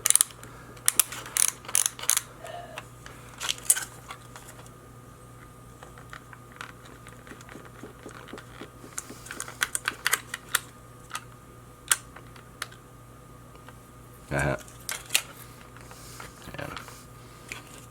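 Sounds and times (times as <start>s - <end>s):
plastic ratchet clicks: 0.9s - 2.2s.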